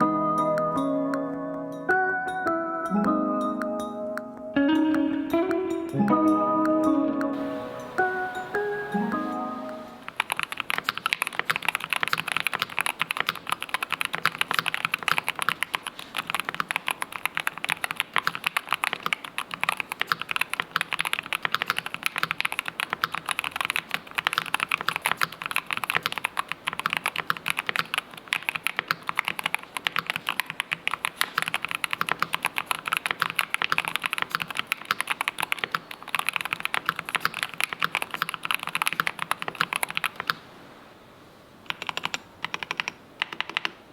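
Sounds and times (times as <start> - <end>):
fast keyboard typing: 10.1 - 40.4, 41.7 - 43.8.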